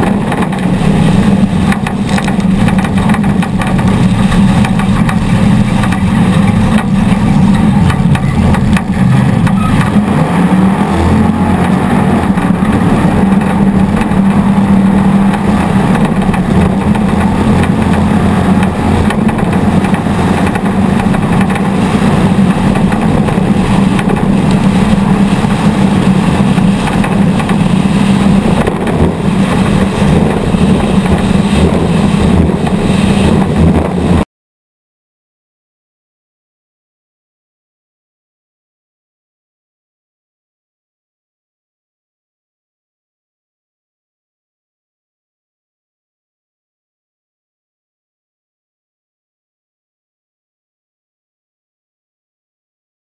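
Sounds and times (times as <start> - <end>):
vehicle engine running hard: 0.0 - 34.3.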